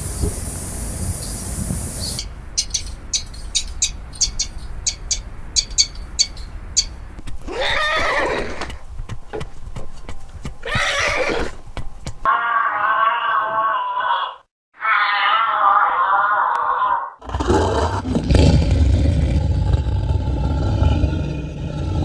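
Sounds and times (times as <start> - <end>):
horse whinnying: 7.2 - 12.3.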